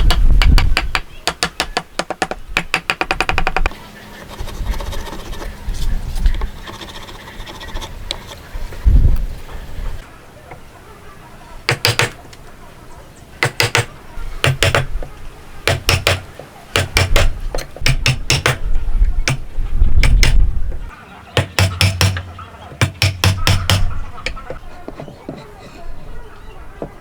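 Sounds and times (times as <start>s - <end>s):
tool knocking on wood: 0.0s - 3.7s, 11.7s - 12.2s, 13.4s - 15.0s, 15.7s - 16.2s, 16.8s - 18.6s, 20.0s - 20.4s, 21.4s - 23.9s.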